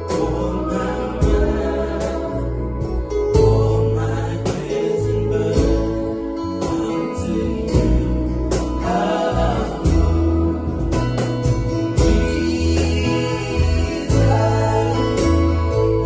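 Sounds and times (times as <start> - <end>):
worship band playing slow song: 0.0 - 16.0
percussion hits: 7.8 - 16.0.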